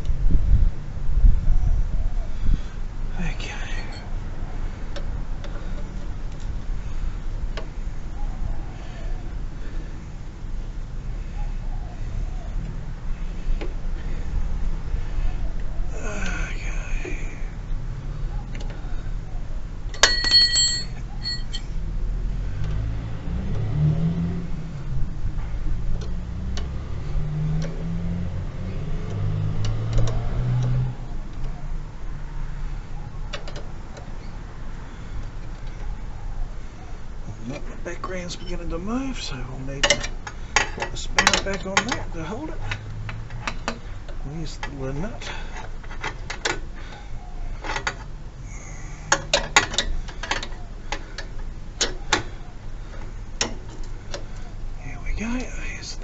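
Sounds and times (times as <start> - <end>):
low engine-like drone: 0.0 - 33.3, 46.7 - 56.0.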